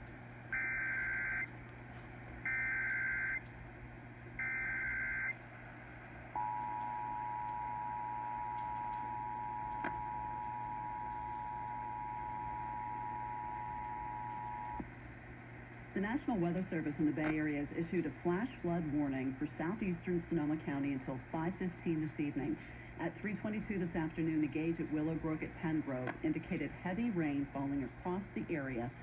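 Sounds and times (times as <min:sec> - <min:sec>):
two-tone attention signal: 0:06.4 - 0:14.8.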